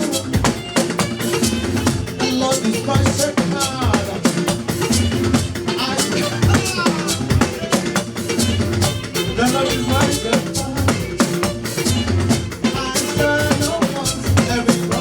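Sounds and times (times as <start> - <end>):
drum kit beat: 0.0 - 15.0
shaker: 0.0 - 15.0
people singing a hymn: 9.3 - 15.0.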